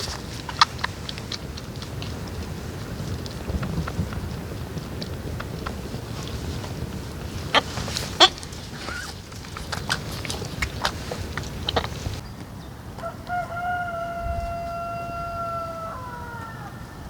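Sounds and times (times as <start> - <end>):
rooster crowing: 13.0 - 17.0.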